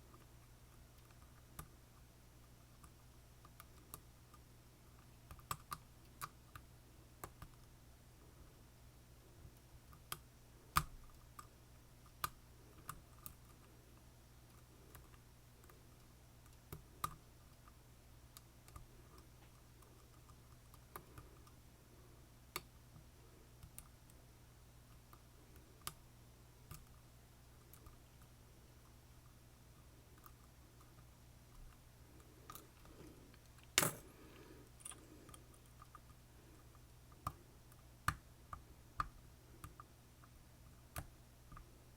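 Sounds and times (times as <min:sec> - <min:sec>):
faint steady hum: 0:00.0 - 0:41.9
lock pick clicking on pins: 0:33.6 - 0:34.1.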